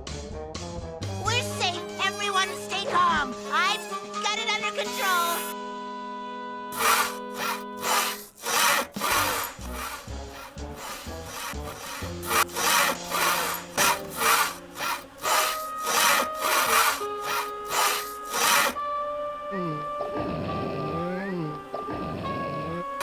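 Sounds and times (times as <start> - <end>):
saw cutting through wood: 1.0 - 5.6, 6.7 - 19.0
faint music: 9.0 - 23.0.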